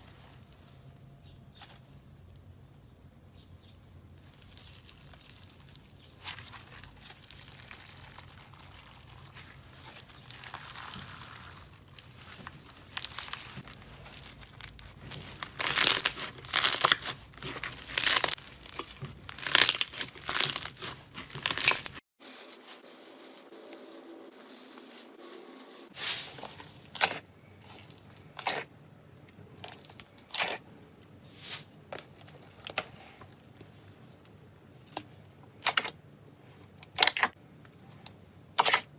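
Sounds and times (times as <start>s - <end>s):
slime crackling and popping: 4.2s - 22.0s.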